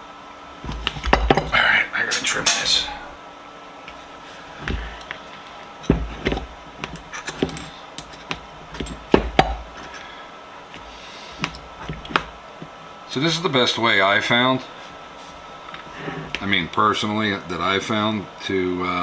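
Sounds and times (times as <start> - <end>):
tools knocking and clicking: 0.6 - 1.6, 4.6 - 10.0, 10.7 - 12.7.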